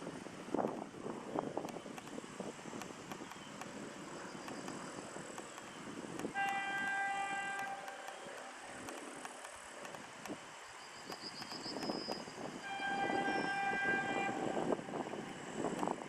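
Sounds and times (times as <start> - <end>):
rumble of approaching train: 0.0 - 16.0
locomotive horn blast: 6.3 - 8.2, 12.6 - 15.0.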